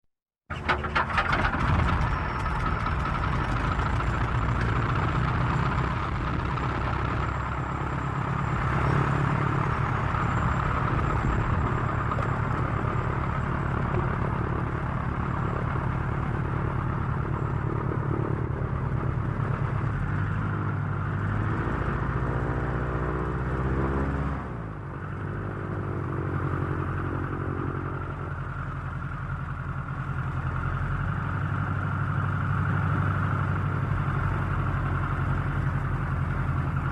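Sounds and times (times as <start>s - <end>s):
aircraft engine running: 0.6s - 21.4s.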